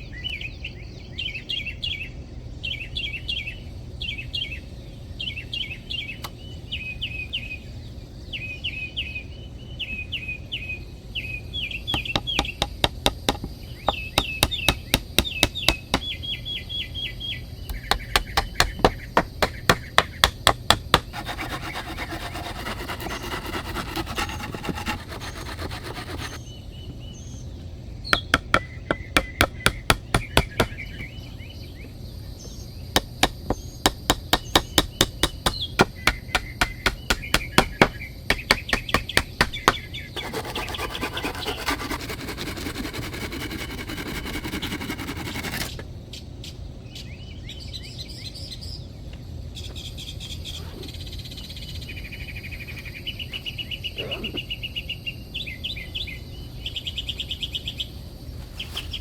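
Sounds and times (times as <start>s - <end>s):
birds chirping: 10.8s - 45.8s
hammer striking wood: 12.0s - 16.1s, 17.7s - 26.4s, 28.2s - 30.8s, 33.0s - 45.7s.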